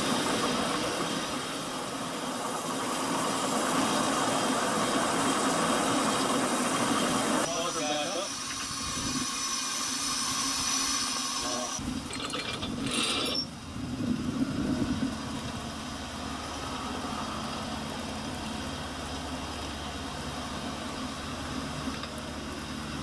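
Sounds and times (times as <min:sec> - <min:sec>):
engine humming steadily: 0:00.0 - 0:09.3, 0:11.4 - 0:23.0
hissing clattering mechanism: 0:07.4 - 0:13.5.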